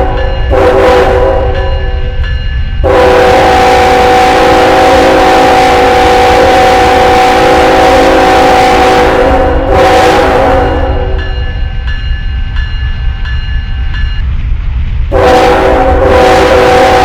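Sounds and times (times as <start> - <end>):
train air horn blast: 0.0 - 1.6, 2.8 - 11.2, 15.1 - 17.0.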